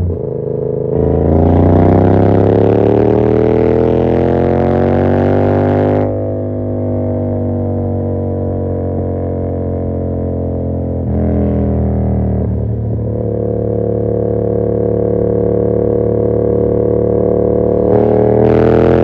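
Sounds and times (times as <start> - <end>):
motorcycle engine revving: 0.0 - 10.0, 10.7 - 19.0.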